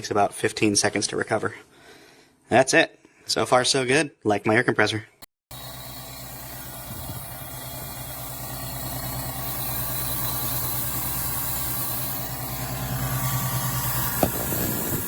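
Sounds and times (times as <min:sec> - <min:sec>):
air compressor running: 0:05.5 - 0:15.0.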